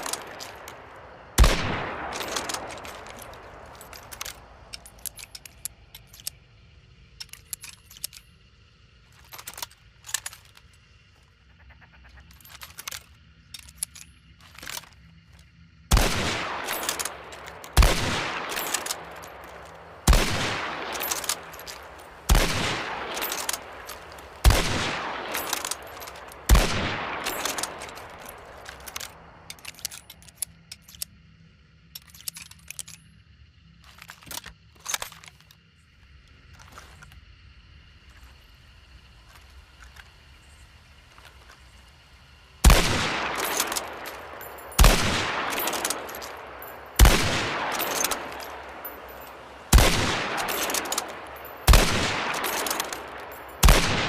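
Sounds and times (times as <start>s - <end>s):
rifle shots echoing: 0.0s - 5.7s, 15.9s - 29.8s, 42.6s - 54.0s
sharp metallic clicks: 0.0s - 11.1s, 12.0s - 31.2s, 31.8s - 33.2s, 42.6s - 54.0s.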